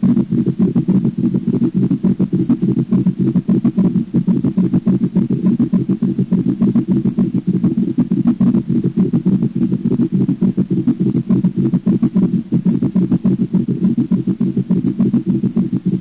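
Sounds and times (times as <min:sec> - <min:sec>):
heartbeat through stethoscope: 0:00.0 - 0:16.0.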